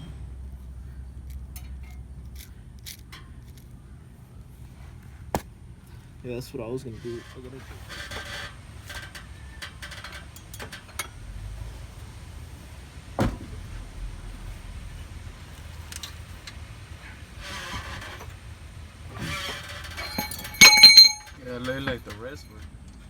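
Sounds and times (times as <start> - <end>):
car engine idling: 0.0 - 22.8.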